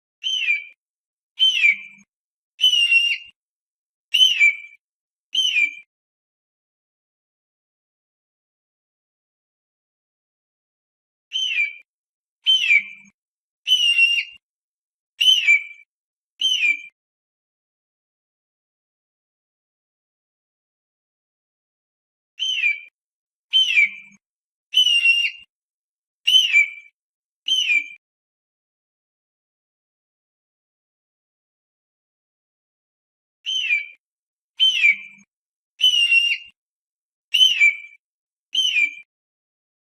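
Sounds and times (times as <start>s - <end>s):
bird of prey screaming: 12.4s - 12.9s, 13.7s - 14.4s, 24.7s - 25.5s, 33.5s - 34.0s, 35.8s - 36.5s, 37.3s - 37.7s.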